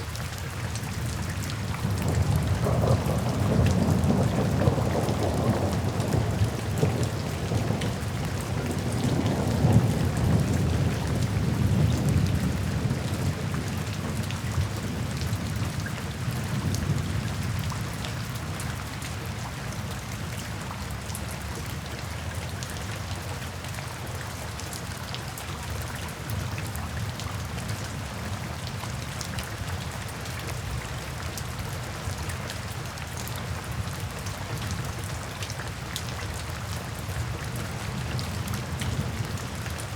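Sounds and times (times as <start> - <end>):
heavy rain falling: 0.0 - 39.9
rolling thunder: 1.8 - 15.6.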